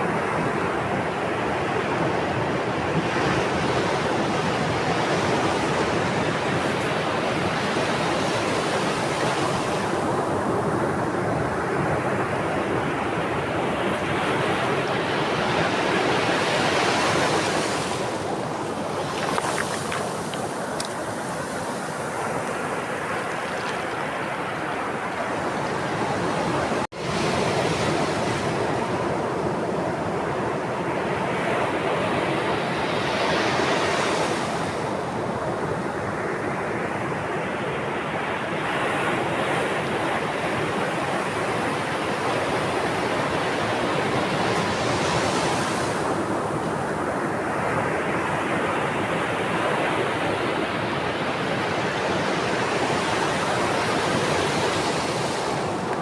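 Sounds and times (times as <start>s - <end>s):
sea waves breaking: 13.6s - 26.9s.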